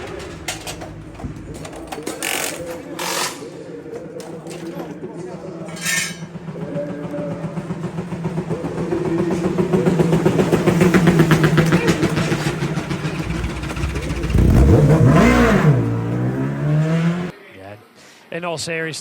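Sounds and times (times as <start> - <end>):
racing motorcycle engine: 0.0 - 17.4
deeper engine rumble: 3.8 - 17.3.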